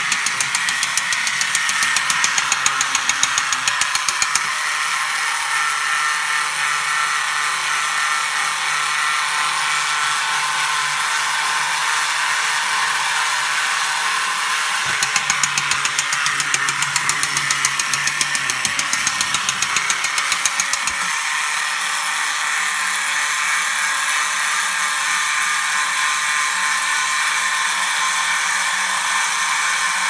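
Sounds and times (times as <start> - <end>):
rapid rhythmic clicking: 0.0 - 4.5, 14.9 - 21.2
toy car motor whirring: 0.0 - 13.9, 14.5 - 22.5.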